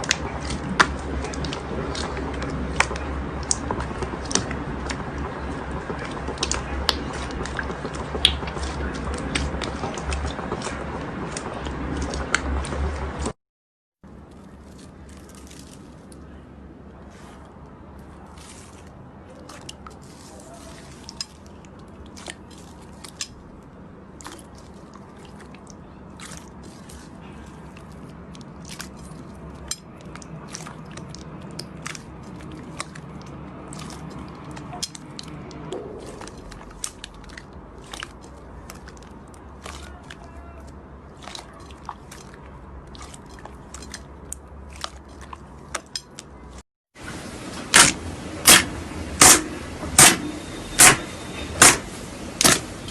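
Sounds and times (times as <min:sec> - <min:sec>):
slime crackling and popping: 0:00.0 - 0:12.8, 0:52.4 - 0:52.9.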